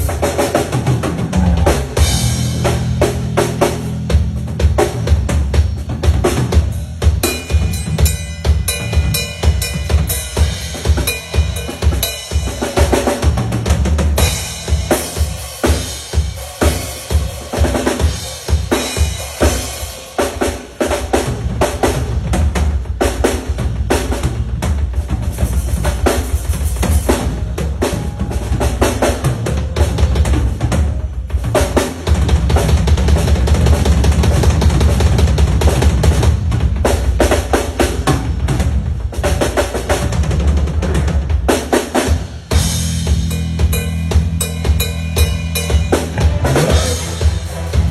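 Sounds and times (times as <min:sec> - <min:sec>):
rapid drum strokes: 0:00.0 - 0:47.9
bass drum hits: 0:00.9 - 0:10.1, 0:42.6 - 0:47.9.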